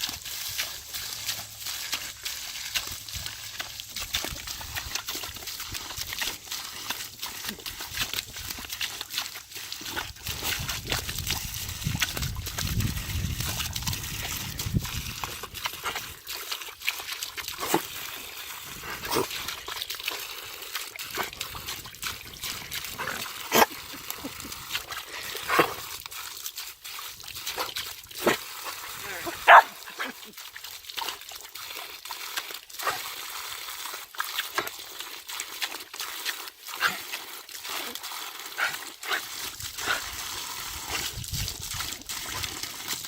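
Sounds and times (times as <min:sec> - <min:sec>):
garden hose spraying water: 0:00.0 - 0:43.0
dogs barking: 0:29.0 - 0:30.2.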